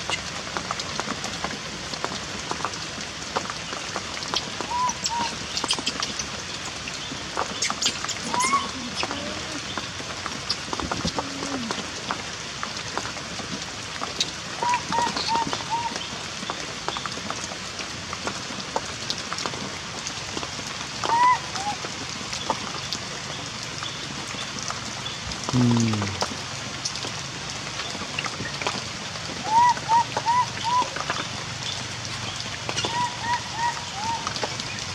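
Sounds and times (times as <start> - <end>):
heavy rain: 0.0 - 34.9
baby monkey squeaking: 7.8 - 9.2.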